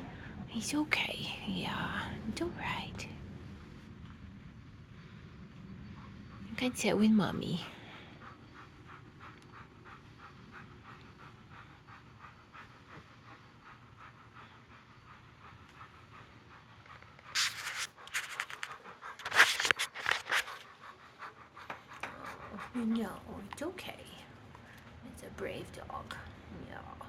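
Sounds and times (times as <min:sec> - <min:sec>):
dog panting: 0:00.0 - 0:04.0, 0:04.7 - 0:27.0
scuffling noise: 0:17.3 - 0:20.6.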